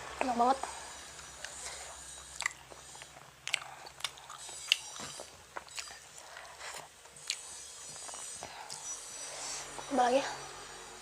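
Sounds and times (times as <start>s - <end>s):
person chewing food: 0.7s - 9.8s
mouth clicks and smacks: 2.3s - 8.9s.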